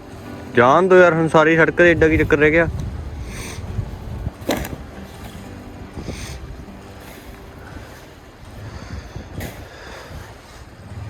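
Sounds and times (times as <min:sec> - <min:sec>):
wind buffeting microphone: 0:00.0 - 0:11.0
snow shovel scraping snow: 0:02.2 - 0:11.0.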